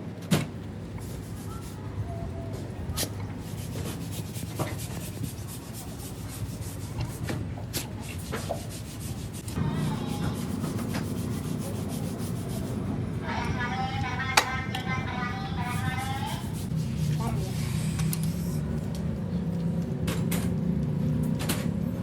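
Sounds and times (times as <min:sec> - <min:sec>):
steady low hum: 0:00.0 - 0:22.0
scraping strokes on engine part: 0:03.0 - 0:12.8, 0:15.6 - 0:18.6.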